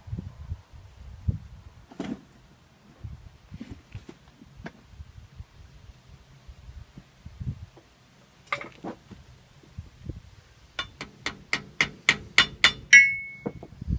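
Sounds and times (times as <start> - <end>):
sharp ringing metal taps: 10.8 - 13.6
metallic clinks: 12.4 - 13.6.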